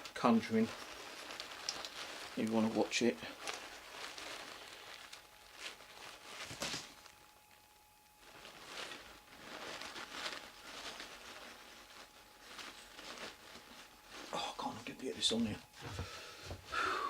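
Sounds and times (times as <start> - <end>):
dolls rustling and knocking: 0.0 - 7.2.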